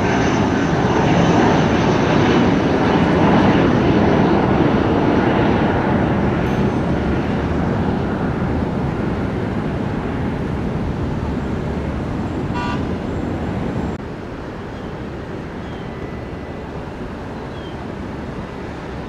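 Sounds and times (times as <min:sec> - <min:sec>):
aircraft engines rumbling: 0:00.0 - 0:19.0
short pitched toot: 0:12.5 - 0:13.0.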